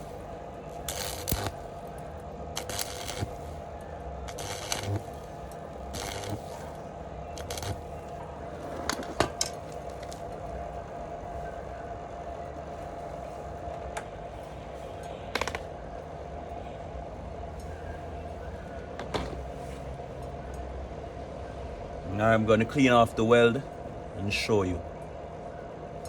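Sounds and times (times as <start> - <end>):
sharp electrical crackles: 0.0 - 3.6, 4.2 - 6.8, 7.4 - 7.9, 9.4 - 10.3
welding machine humming: 0.0 - 16.0
cooling fans whirring: 0.0 - 26.0.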